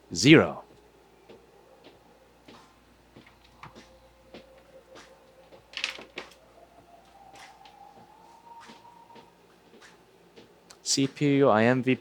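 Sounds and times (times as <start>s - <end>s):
faint rising tone: 6.4s - 9.5s.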